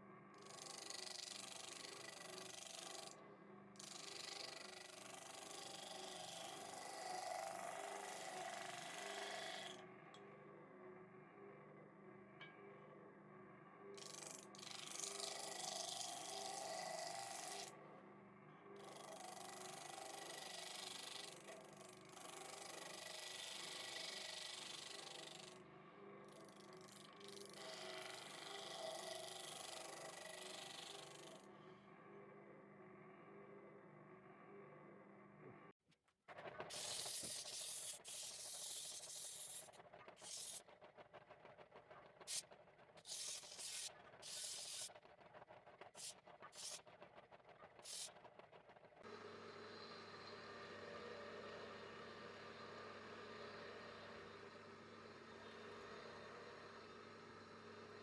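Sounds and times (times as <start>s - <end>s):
power saw cutting timber: 4.0s - 9.8s.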